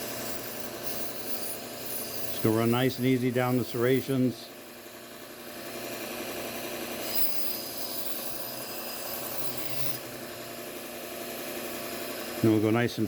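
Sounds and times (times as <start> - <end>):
knife grinding hiss: 0.0 - 3.0, 7.0 - 10.0
belt grinder motor hum: 0.0 - 4.2, 5.4 - 12.4.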